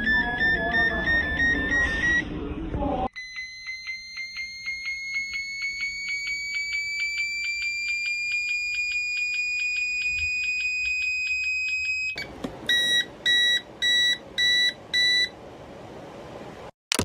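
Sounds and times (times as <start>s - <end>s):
keypad short beeps: 0.0s - 2.2s.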